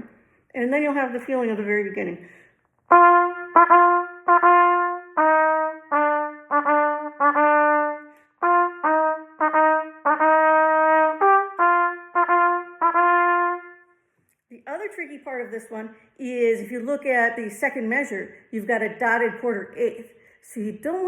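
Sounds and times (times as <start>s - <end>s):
solo trumpet playing: 2.9s - 14.0s.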